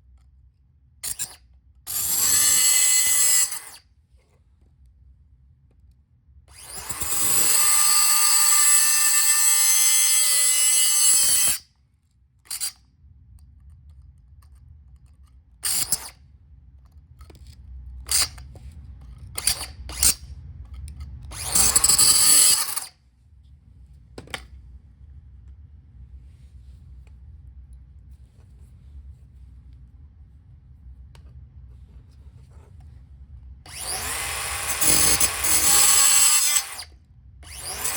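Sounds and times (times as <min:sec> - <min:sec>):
power tool high whine: 0:33.7 - 0:37.9.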